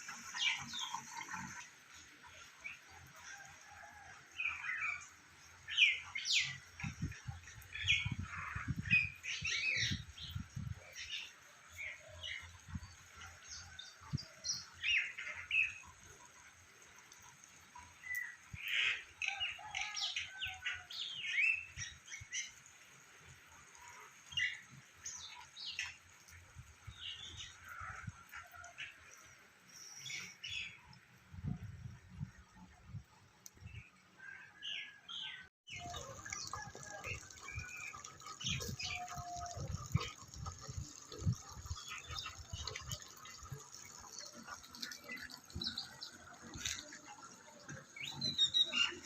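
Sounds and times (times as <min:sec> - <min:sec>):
birds chirping and calling: 0:34.2 - 0:49.0.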